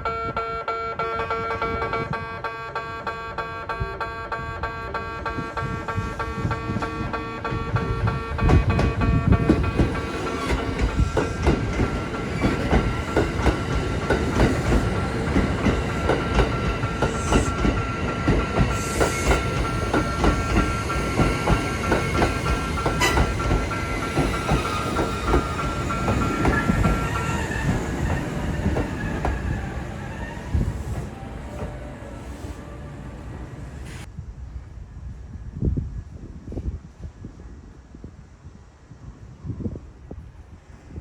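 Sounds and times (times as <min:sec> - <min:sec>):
train low rumble: 0:00.0 - 0:41.0
train wheels clacking over rail joints: 0:05.3 - 0:29.9.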